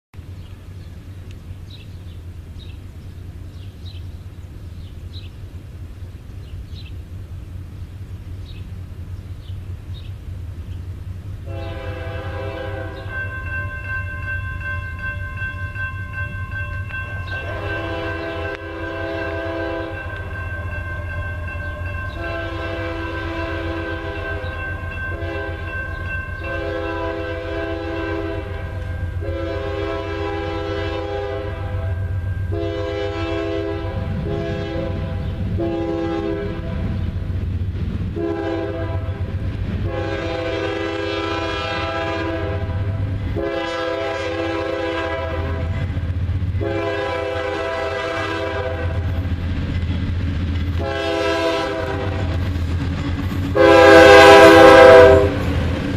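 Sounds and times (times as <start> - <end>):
train rumbling: 0.2 - 55.9
locomotive horn blasts: 11.4 - 15.9, 16.5 - 37.0, 38.2 - 45.9, 46.6 - 49.1, 50.8 - 52.4, 53.6 - 55.5.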